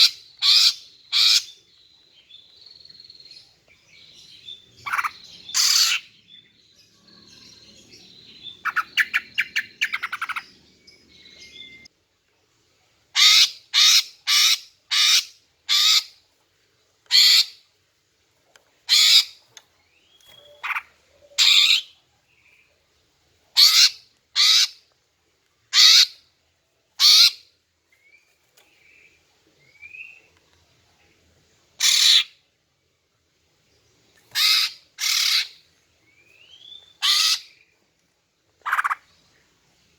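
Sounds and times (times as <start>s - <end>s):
faint bird chirps: 0.0s - 11.9s, 19.8s - 22.8s, 27.9s - 31.2s
short harsh bird calls: 4.8s - 6.1s, 34.3s - 35.6s, 36.4s - 37.6s.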